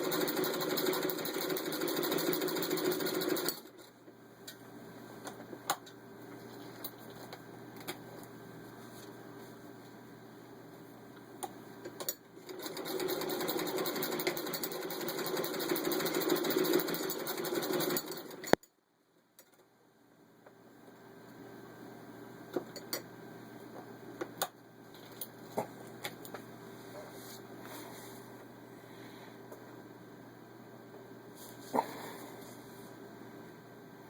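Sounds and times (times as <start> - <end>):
sewing machine stitching: 0.0 - 3.7, 12.4 - 18.5.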